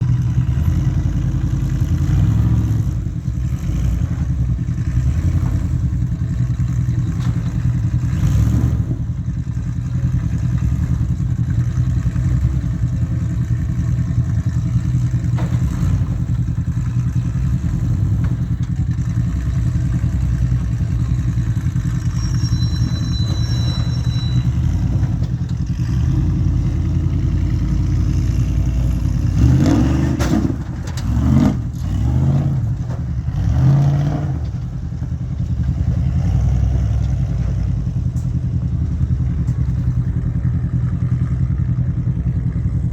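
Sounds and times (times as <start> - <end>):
race car engine revving: 14.6 - 38.0
chassis clattering on rocks: 14.9 - 16.4, 29.3 - 36.3.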